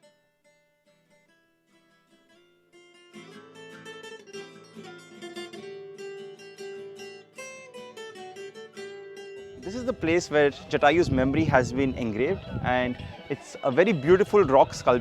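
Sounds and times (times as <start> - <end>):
plucked acoustic guitar music: 0.0 - 15.0.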